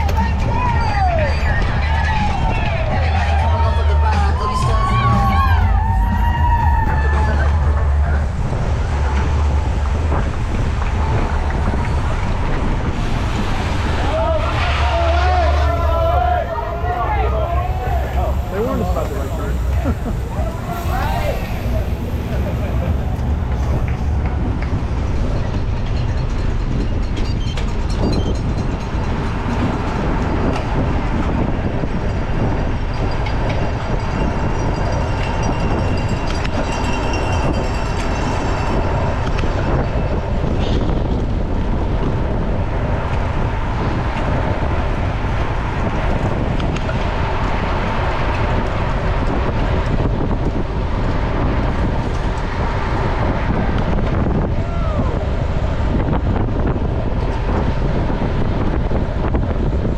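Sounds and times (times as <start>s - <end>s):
bike tyres rumbling on gravel: 0.0s - 28.1s
wind noise on microphone: 0.0s - 59.9s.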